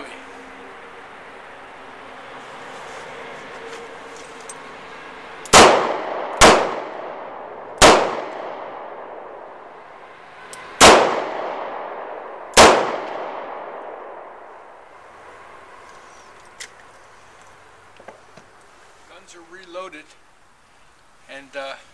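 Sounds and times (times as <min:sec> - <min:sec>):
revolver gunshots echoing: 0:05.5 - 0:09.6, 0:10.8 - 0:14.5.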